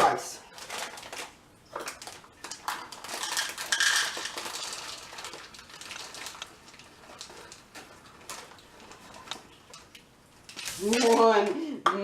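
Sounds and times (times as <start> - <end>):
chocolate chips pouring into bowl: 2.5 - 7.7.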